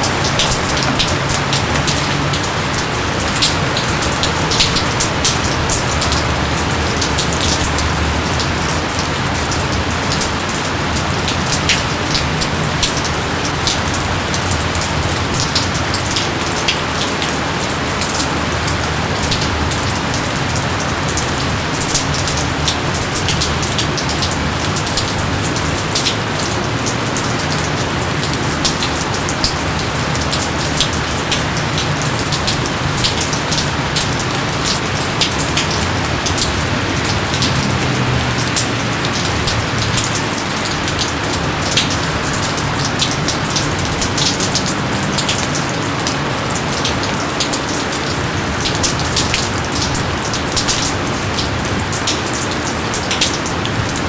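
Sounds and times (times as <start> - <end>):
heavy rainfall: 0.0 - 54.0
raindrops ticking: 0.0 - 54.0.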